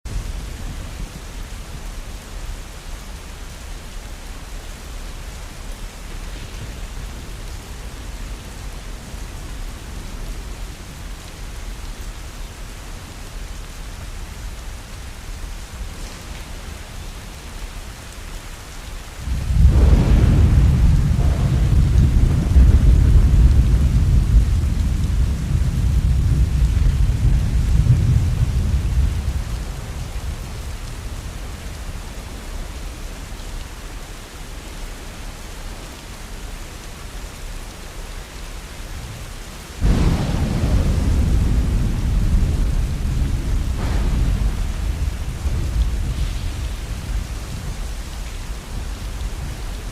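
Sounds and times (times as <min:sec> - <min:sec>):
steady rain: 0:00.0 - 0:49.9
thunder rumbling: 0:13.9 - 0:18.0, 0:19.1 - 0:33.4, 0:39.8 - 0:49.9.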